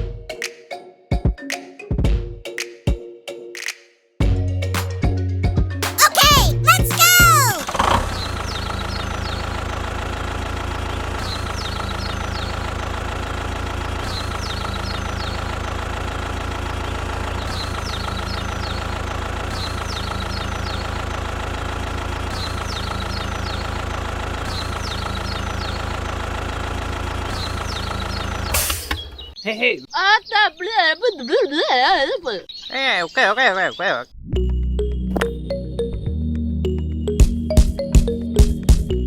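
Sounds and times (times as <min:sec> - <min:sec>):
bulldozer engine idling: 0:08.4 - 0:28.5.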